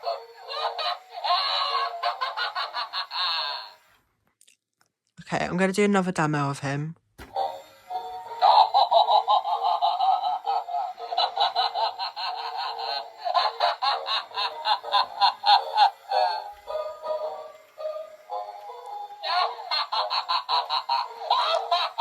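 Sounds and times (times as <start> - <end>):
toy clown laughing through speaker: 0.0 - 4.0, 7.4 - 22.0.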